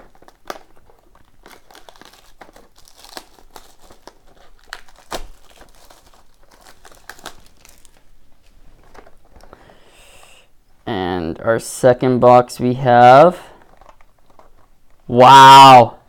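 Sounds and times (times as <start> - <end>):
packaging crinkling and tearing: 0.0 - 9.6, 13.5 - 15.1.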